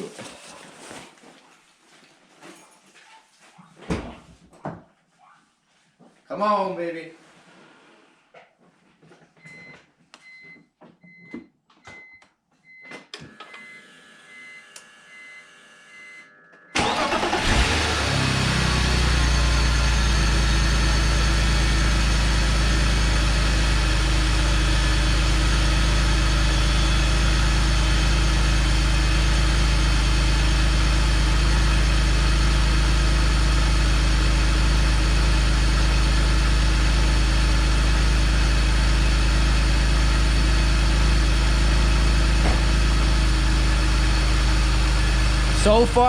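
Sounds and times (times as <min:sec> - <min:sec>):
car engine idling: 0:16.8 - 0:46.0.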